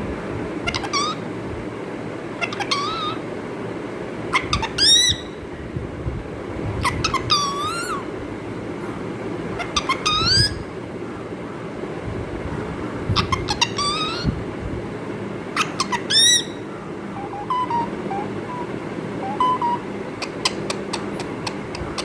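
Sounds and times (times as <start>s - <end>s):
parrot calling: 0.6s - 1.2s, 2.4s - 3.2s, 4.3s - 5.4s, 6.8s - 8.1s, 9.5s - 10.7s, 13.1s - 14.4s, 15.5s - 22.0s.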